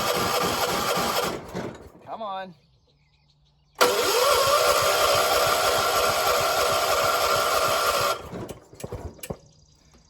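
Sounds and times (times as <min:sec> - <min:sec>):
starter motor cranking engine: 0:00.0 - 0:02.0, 0:03.8 - 0:09.4.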